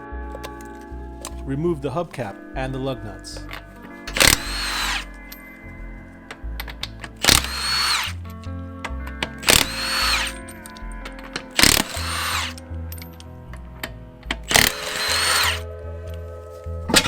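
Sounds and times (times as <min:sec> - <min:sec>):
background music with bass: 0:00.0 - 0:17.0
power tool motor whine: 0:04.0 - 0:05.2, 0:07.2 - 0:08.2, 0:09.4 - 0:10.5, 0:11.6 - 0:12.6, 0:14.5 - 0:15.7.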